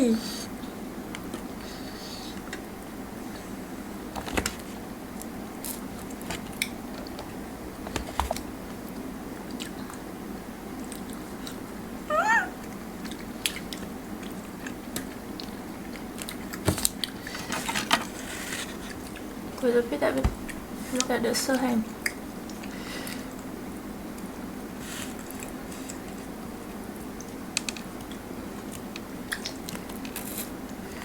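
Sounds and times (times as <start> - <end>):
chewing: 28.0 - 31.0.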